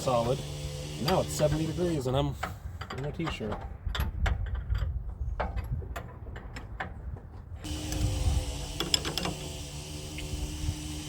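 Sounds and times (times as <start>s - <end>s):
mechanical hum: 7.6s - 11.0s.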